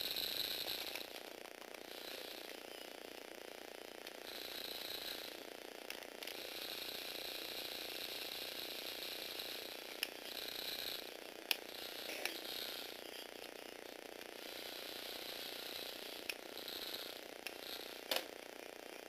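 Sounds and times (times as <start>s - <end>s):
small electric motor whirring: 0.0s - 19.0s.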